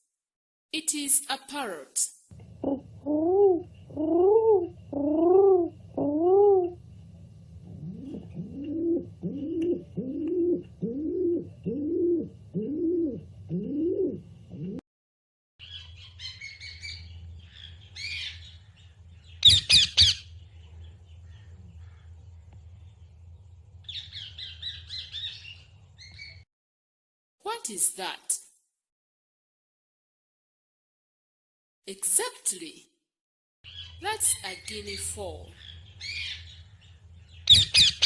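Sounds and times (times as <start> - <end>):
low arching bird calls: 2.6 - 6.8, 7.6 - 14.8, 15.6 - 23.0, 23.8 - 26.4, 35.6 - 38.0
harsh chattering bird calls: 15.6 - 22.4, 33.7 - 38.0.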